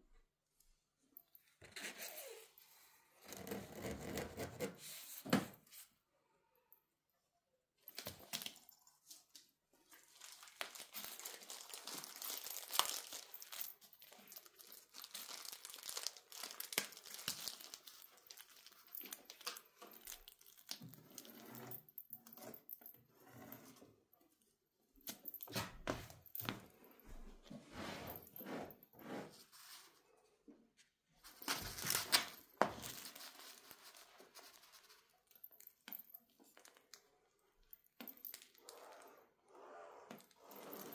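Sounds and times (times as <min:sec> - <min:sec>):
crinkling and tearing: 0:09.9 - 0:20.7.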